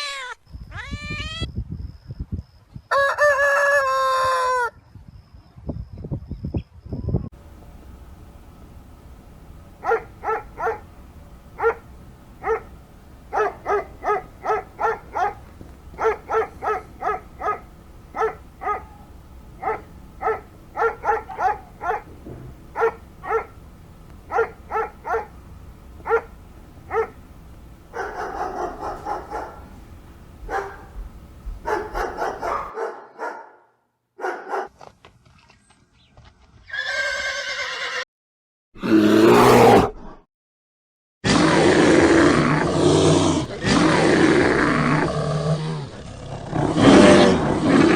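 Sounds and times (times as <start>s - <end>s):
dog barking: 9.8s - 10.9s, 11.6s - 23.6s, 24.3s - 25.4s, 26.0s - 27.2s, 27.9s - 29.8s, 30.4s - 31.0s, 31.6s - 34.8s
horse whinnying: 36.7s - 38.0s.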